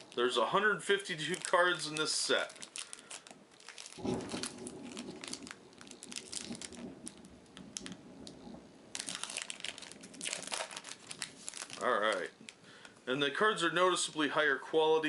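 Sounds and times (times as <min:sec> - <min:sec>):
wrapper crinkling: 0:00.0 - 0:13.0.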